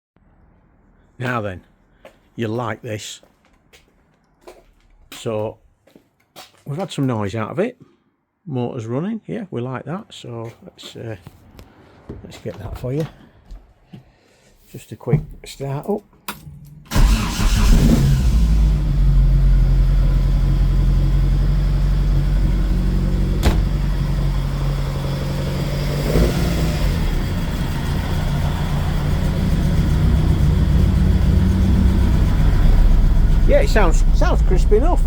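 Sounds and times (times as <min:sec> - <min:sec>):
car engine starting and idling: 0:16.4 - 0:35.0.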